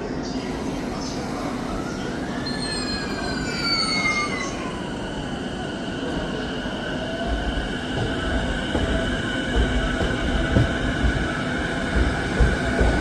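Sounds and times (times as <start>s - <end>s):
train running rumble: 6.0s - 13.0s.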